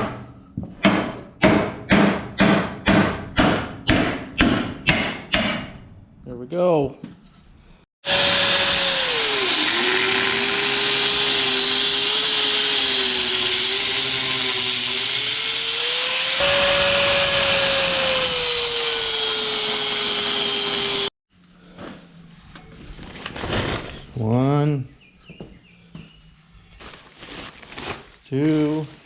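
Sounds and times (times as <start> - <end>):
power tool whining: 8.0 - 21.1.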